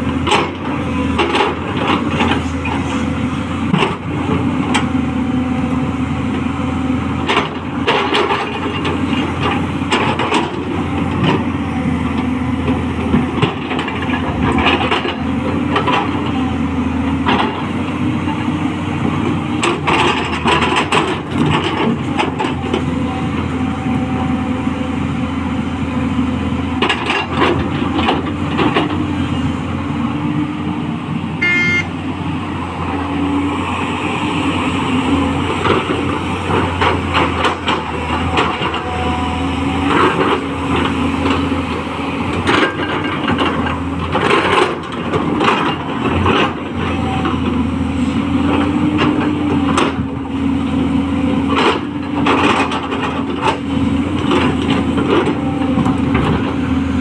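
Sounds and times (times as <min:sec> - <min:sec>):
excavator diesel engine running: 0:00.0 - 0:57.0
brief high-pitched tone: 0:31.4 - 0:32.0.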